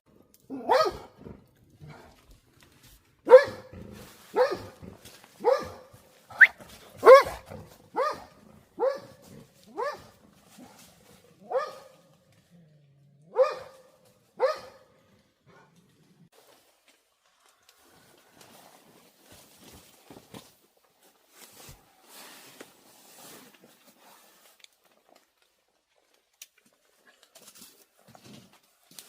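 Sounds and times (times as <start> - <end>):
dog barking: 0.5 - 1.2, 3.3 - 4.8, 5.4 - 10.2, 11.4 - 12.1, 13.3 - 14.9.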